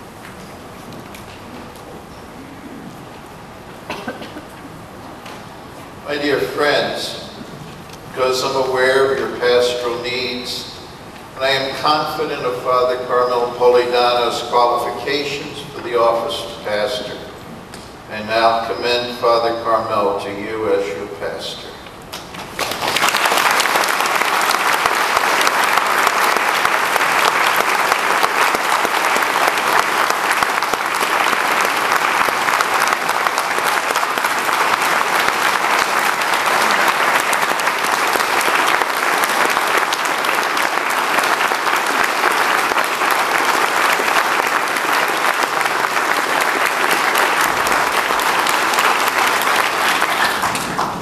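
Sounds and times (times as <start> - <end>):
congregation applauding: 22.1 - 51.0.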